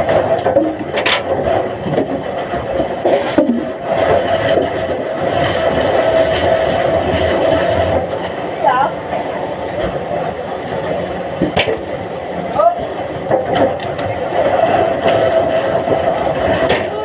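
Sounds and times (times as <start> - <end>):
logs knocking: 0.0 - 5.1
machinery hum: 0.0 - 17.0
wood scraping and rubbing: 0.0 - 17.0.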